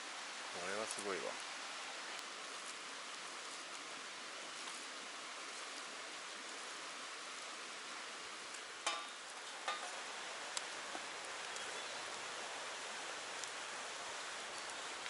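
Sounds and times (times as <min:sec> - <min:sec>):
outdoor background hiss: 0:00.0 - 0:15.0
light ticks: 0:02.1 - 0:02.8, 0:09.7 - 0:11.7, 0:13.4 - 0:13.6
metal cookware clinks: 0:08.9 - 0:09.9.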